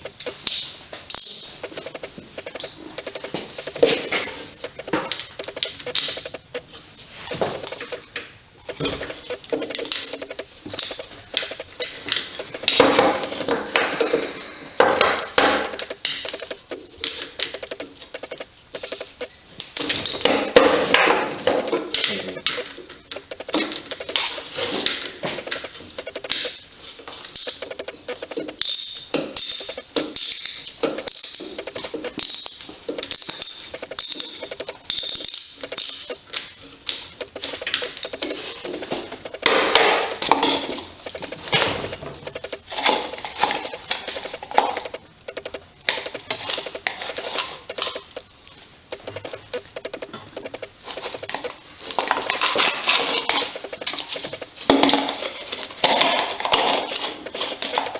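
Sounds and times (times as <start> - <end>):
ratchet wrench clicking: 27.4 - 36.3.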